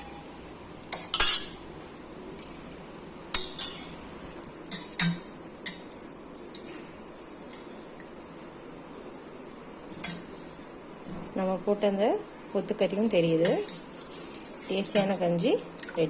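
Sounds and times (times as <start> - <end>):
metal utensil clinking on pot: 9.9 - 10.7.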